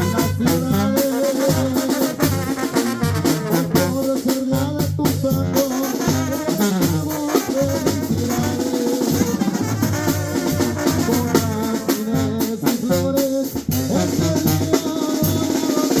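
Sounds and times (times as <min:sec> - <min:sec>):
cymbals: 0:00.0 - 0:04.0, 0:05.4 - 0:12.4
bass drum and snare beat: 0:00.0 - 0:16.0
brass playing melody: 0:00.0 - 0:16.0.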